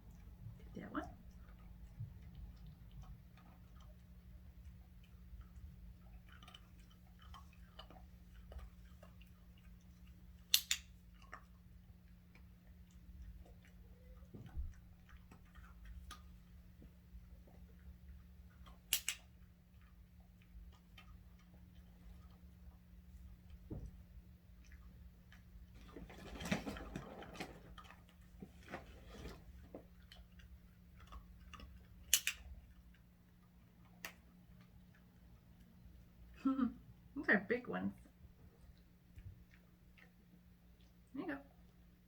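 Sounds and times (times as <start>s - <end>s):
sharp double clicks: 18.9s - 19.2s, 32.1s - 32.5s.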